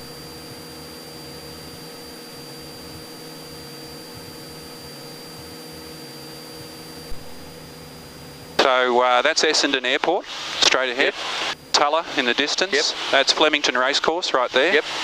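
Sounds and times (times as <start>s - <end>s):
airplane engine and propeller drone: 0.0s - 15.0s
intercom hiss: 8.6s - 15.0s.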